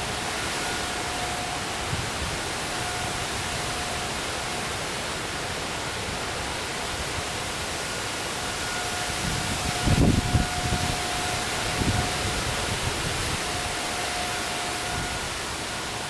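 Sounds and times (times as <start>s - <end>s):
distant warning siren: 0.0s - 16.0s
storm downpour hissing: 0.0s - 16.0s
wind buffeting microphone: 9.1s - 14.0s.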